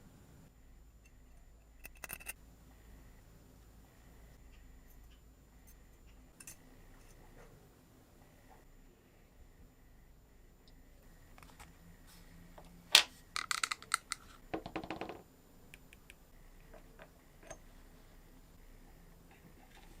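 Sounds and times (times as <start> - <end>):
metal parts clinking and rattling: 1.8 - 2.4, 13.4 - 14.2.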